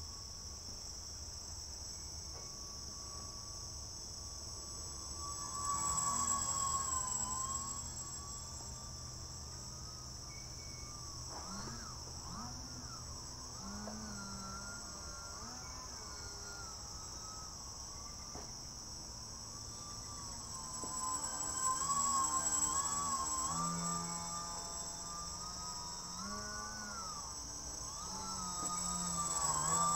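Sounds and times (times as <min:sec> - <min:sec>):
insects chirping chorus: 0:00.0 - 0:29.9
whine rising and falling in pitch: 0:04.2 - 0:29.9.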